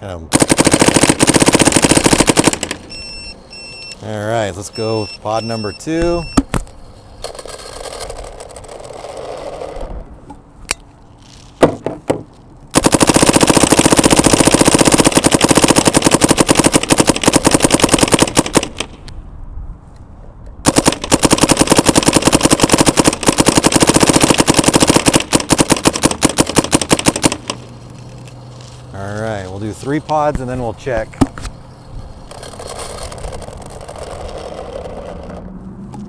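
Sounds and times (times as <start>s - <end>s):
paintball marker firing: 0.4s - 3.0s, 6.0s - 6.8s, 12.8s - 19.1s, 20.7s - 27.7s, 30.1s - 31.6s.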